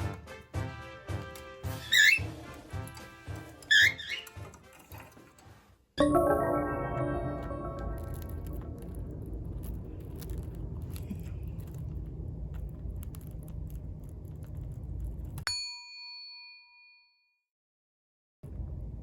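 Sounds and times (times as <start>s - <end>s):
bell-like ding: 6.0s - 8.3s
low rumble: 7.4s - 15.4s.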